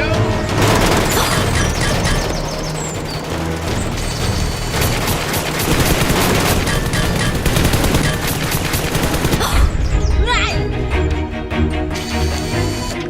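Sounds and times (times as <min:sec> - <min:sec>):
action background music: 0:00.0 - 0:13.0
machine-gun fire: 0:00.5 - 0:09.5.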